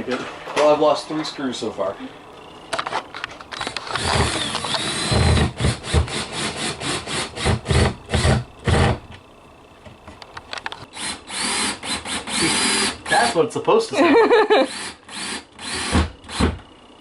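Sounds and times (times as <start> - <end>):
power drill motor whine: 2.3 - 9.8, 10.4 - 13.4, 14.5 - 17.0
rattling clicks: 2.7 - 6.2.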